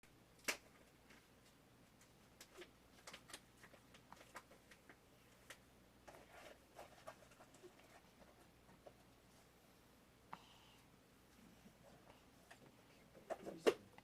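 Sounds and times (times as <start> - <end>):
low steady hum: 0.1 - 14.0
faint clicks and rustles: 0.3 - 9.6.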